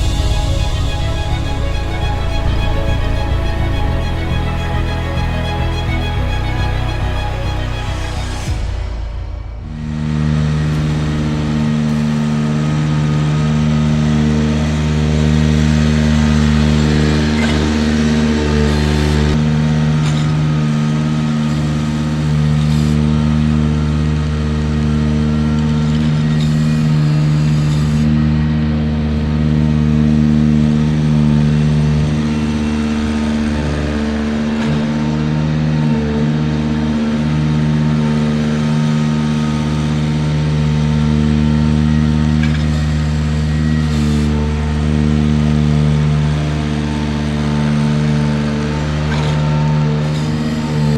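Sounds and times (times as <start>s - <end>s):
tractor engine running: 0.0s - 13.9s.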